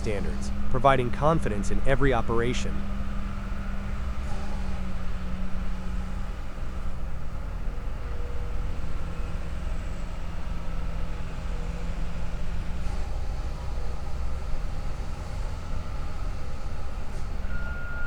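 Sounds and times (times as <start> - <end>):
machine engine rumbling: 0.0 - 4.7.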